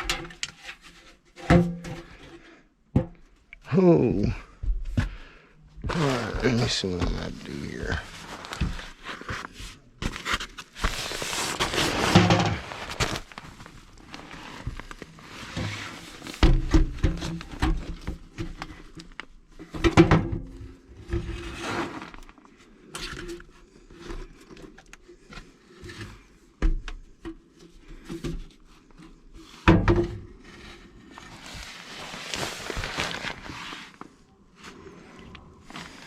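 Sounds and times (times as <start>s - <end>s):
scraping: 5.8s - 16.4s.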